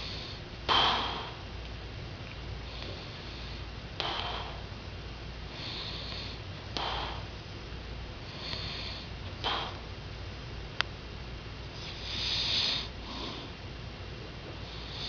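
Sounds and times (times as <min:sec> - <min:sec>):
soft breathing: 0:00.0 - 0:01.5, 0:02.6 - 0:07.5, 0:08.2 - 0:10.0, 0:11.7 - 0:13.6, 0:14.5 - 0:15.0.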